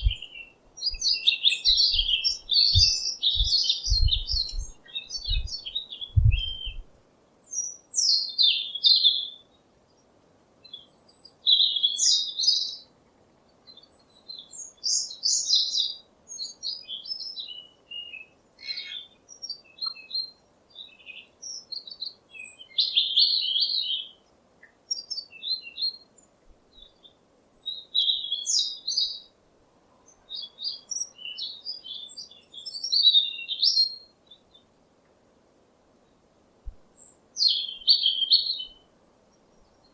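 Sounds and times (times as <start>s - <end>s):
small birds chirping: 0.0s - 12.9s, 13.6s - 29.4s, 30.0s - 34.8s, 36.0s - 39.9s
faint background hiss: 0.0s - 39.9s
low rumble: 2.8s - 5.6s, 6.2s - 6.9s.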